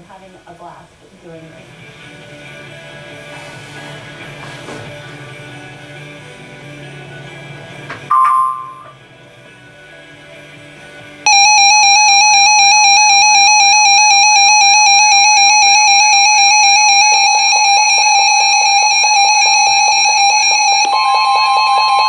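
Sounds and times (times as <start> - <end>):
weather radio alert alarm: 11.3 - 22.0.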